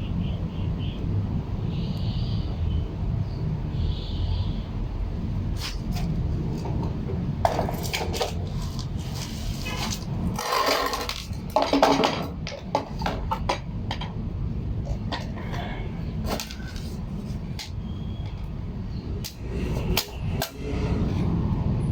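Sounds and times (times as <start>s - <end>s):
tools and parts clinking: 5.9s - 14.2s, 14.8s - 18.5s.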